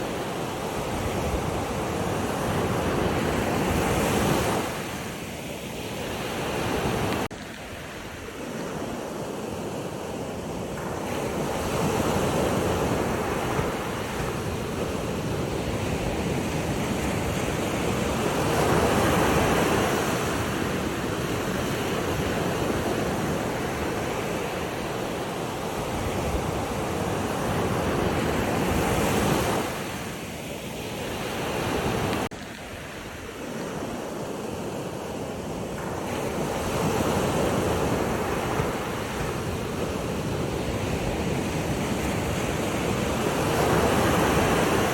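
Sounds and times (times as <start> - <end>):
ocean waves breaking: 0.0 - 44.9
wind on microphone: 0.0 - 44.9.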